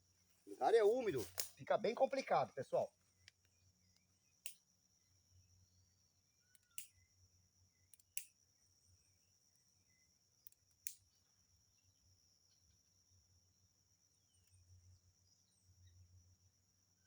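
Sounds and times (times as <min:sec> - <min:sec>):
high insect drone: 0:00.0 - 0:17.0
twig fire crackling: 0:00.4 - 0:03.5
fire pops: 0:01.0 - 0:01.6.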